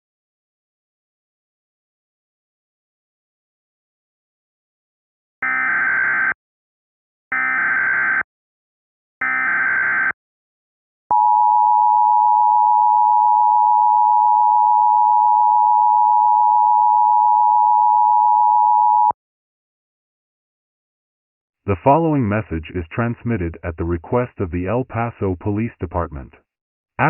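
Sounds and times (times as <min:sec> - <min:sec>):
two-tone alarm: 0:05.4 - 0:06.4, 0:07.3 - 0:08.3, 0:09.2 - 0:10.2, 0:11.1 - 0:19.2.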